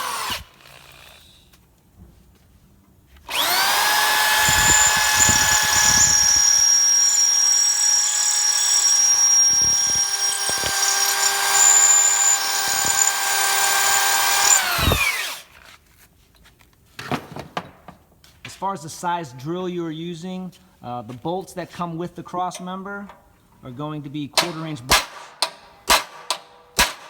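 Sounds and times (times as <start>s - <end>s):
electric drill drilling rivets: 0.0s - 1.5s, 3.2s - 15.5s.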